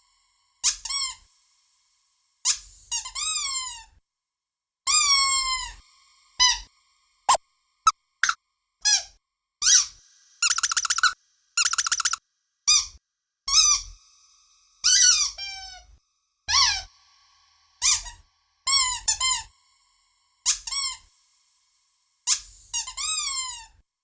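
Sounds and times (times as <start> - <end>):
squeaky dog toy squeaks: 10.4 - 12.2.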